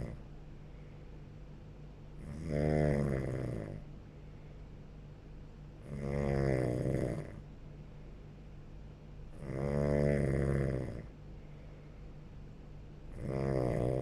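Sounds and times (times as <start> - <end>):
person snoring: 0.0 - 0.2, 2.2 - 3.8, 5.8 - 7.4, 9.4 - 11.1, 13.1 - 14.0.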